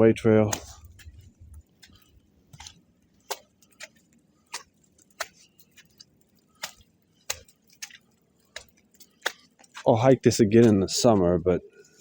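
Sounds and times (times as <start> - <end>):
footsteps crunching in snow: 0.4 - 4.6, 6.6 - 11.4.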